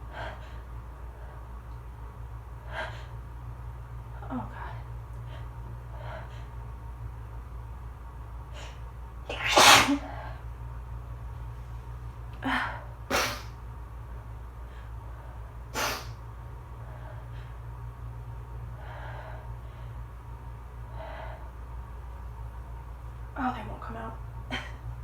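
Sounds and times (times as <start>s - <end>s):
person sneezing: 9.3s - 10.1s, 13.1s - 13.5s, 15.8s - 16.1s.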